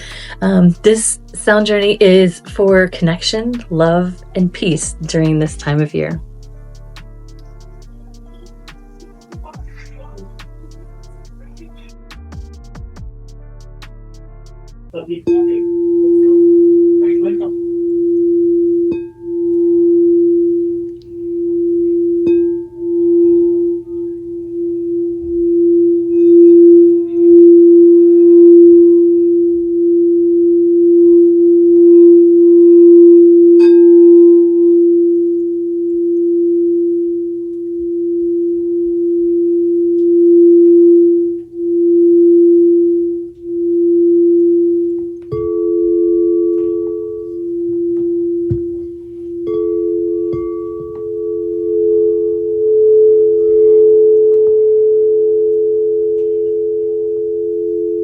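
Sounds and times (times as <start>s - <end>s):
singing bowl sustained tone: 0.4s - 8.6s, 15.2s - 58.0s
faint high pings: 15.2s - 58.0s.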